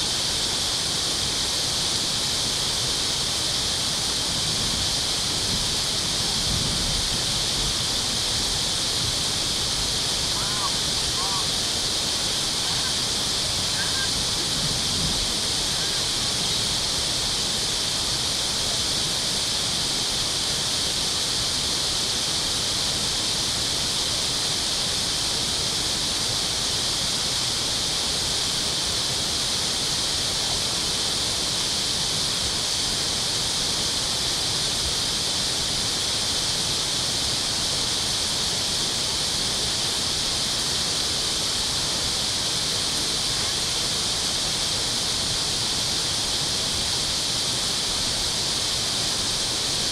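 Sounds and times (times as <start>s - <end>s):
water rushing through dam: 0.0s - 49.9s.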